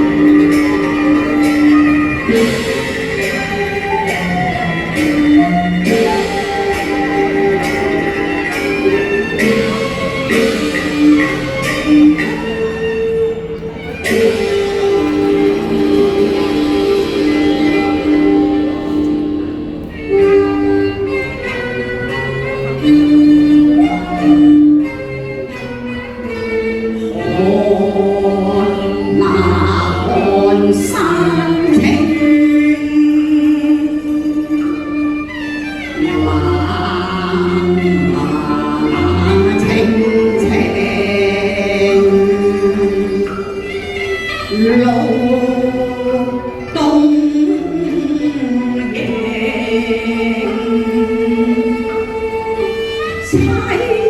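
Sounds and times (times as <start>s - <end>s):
women singing opera: 0.0s - 12.6s, 26.7s - 54.0s.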